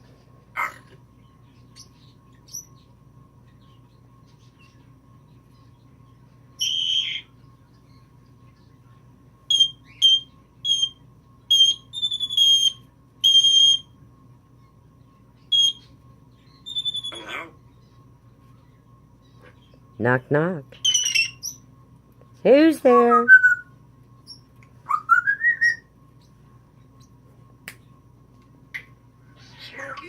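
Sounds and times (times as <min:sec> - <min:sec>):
parrot mimicking ringtone beeps: 0:16.7 - 0:17.5.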